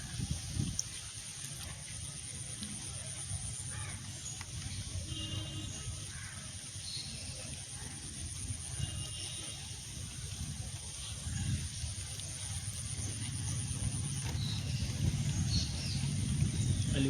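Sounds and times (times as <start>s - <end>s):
low rumble on microphone: 0.0s - 1.7s, 7.4s - 17.0s.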